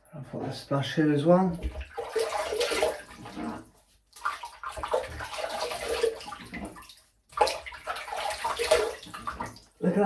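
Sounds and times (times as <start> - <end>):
water splashing in a sink: 1.4 - 10.0.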